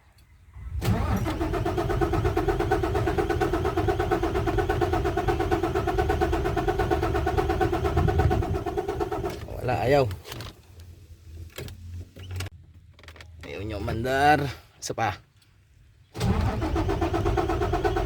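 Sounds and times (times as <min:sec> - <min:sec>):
diesel engine cranking: 0:00.6 - 0:10.6, 0:16.2 - 0:18.0.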